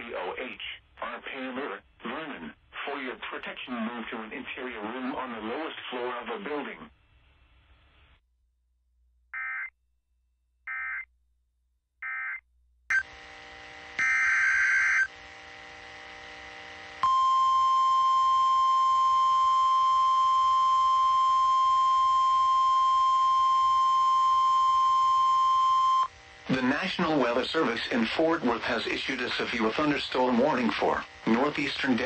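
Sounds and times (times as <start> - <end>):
warbling digital data tones: 14.0 - 15.1
radio hiss: 26.4 - 32.0.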